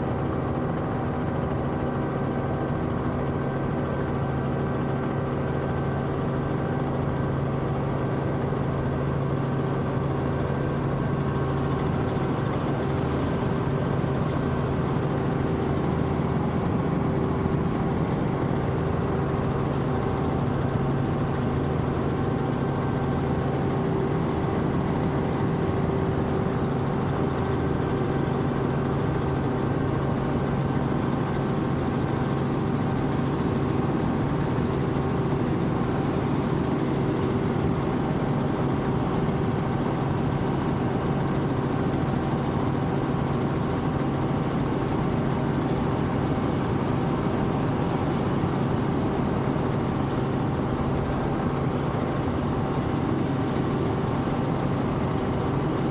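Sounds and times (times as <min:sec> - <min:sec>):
helicopter engine and rotors: 0:00.0 - 0:55.9.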